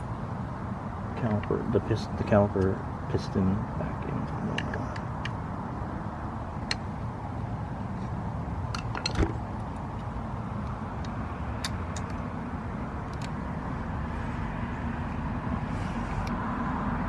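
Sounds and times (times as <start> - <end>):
small metallic clicks: 8.7 - 12.2, 13.1 - 13.4.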